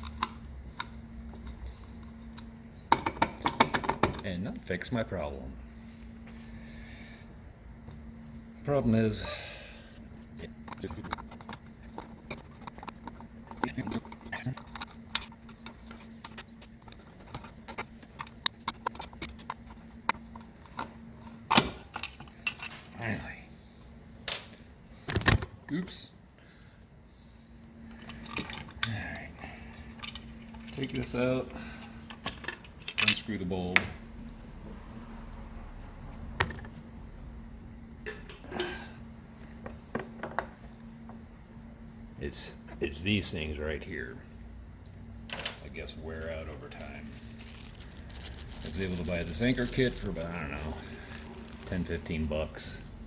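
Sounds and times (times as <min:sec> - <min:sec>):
faint steady hum: 0:00.0 - 0:53.0
plastic rattle: 0:46.8 - 0:52.2.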